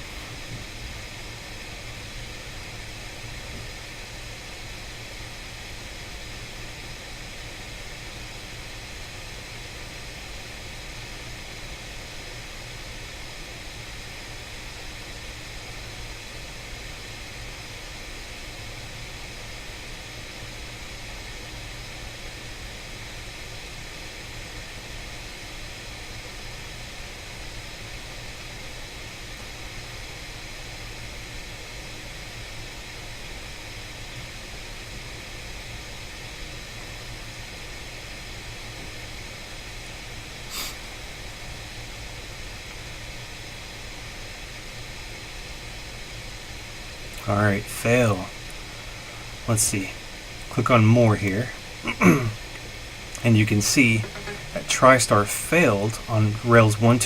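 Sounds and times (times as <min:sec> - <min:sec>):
background hiss: 0:35.9 - 0:42.1, 0:42.8 - 0:57.0
low hum: 0:43.6 - 0:57.0.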